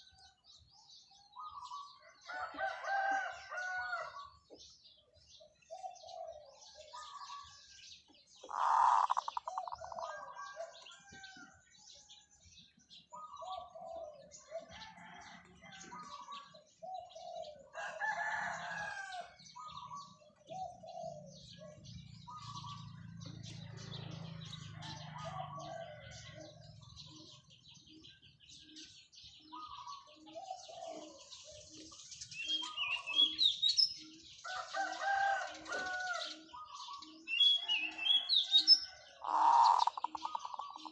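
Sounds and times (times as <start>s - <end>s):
small birds chirping: 0.0s - 40.9s
rooster crowing: 2.2s - 4.3s, 17.7s - 19.4s, 24.5s - 26.5s, 34.4s - 36.5s, 37.6s - 40.5s
dove cooing: 5.4s - 7.5s, 8.4s - 11.1s, 13.1s - 28.2s, 29.4s - 40.9s.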